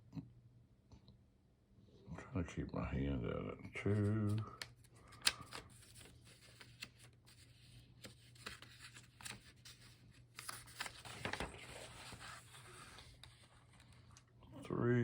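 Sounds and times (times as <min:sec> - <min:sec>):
pages turning: 0:03.8 - 0:14.3
paper rustling: 0:03.8 - 0:14.3.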